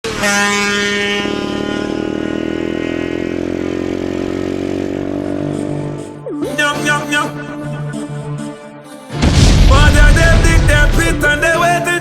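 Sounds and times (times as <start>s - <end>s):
dirt bike engine revving high: 0.0s - 7.3s.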